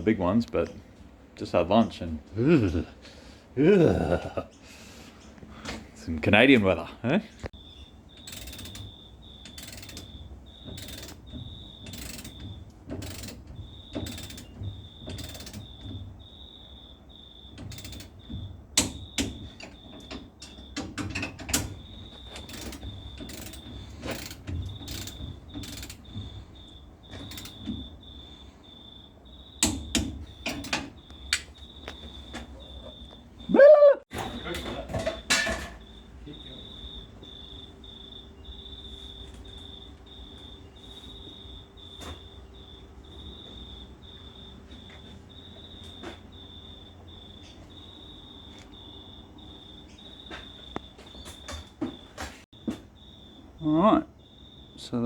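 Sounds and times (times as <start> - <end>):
ratchet spanner clicking: 8.1 - 15.8, 17.6 - 18.2, 22.4 - 26.1, 27.2 - 27.8.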